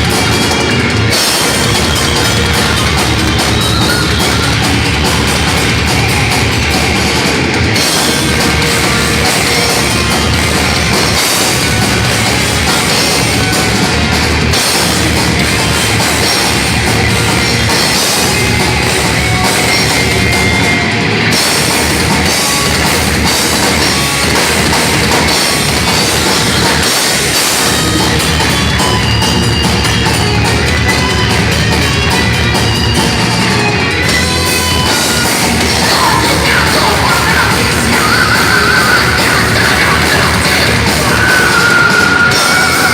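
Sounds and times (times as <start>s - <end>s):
bass guitar: 0.0s - 42.9s
distorted electric guitars: 0.0s - 42.9s
drum kit with cymbals: 0.0s - 42.9s.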